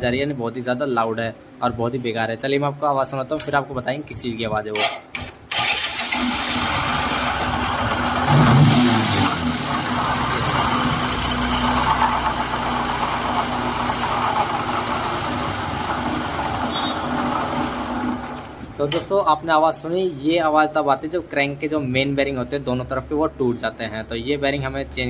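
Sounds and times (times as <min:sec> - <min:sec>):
loud motorcycle engine idling: 0:07.2 - 0:18.4.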